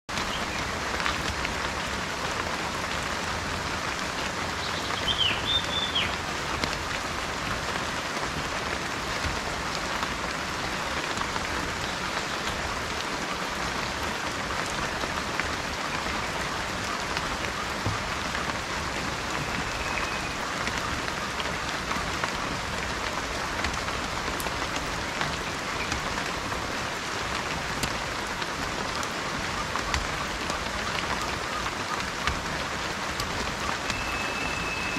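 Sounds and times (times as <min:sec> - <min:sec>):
steady rain falling: 0:00.1 - 0:34.9
bird calling: 0:04.6 - 0:06.3, 0:16.8 - 0:21.9, 0:33.4 - 0:34.9.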